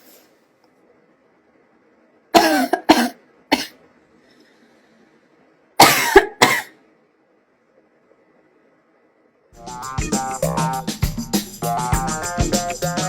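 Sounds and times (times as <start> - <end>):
person coughing: 2.4 - 3.8, 5.8 - 6.8.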